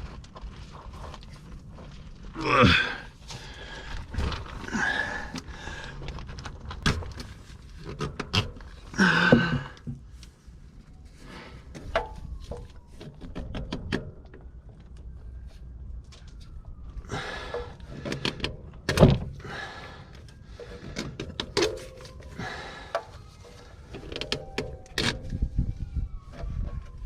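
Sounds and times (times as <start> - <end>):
man grunting and breathing hard: 2.4 - 3.2, 4.5 - 6.0, 8.9 - 9.8.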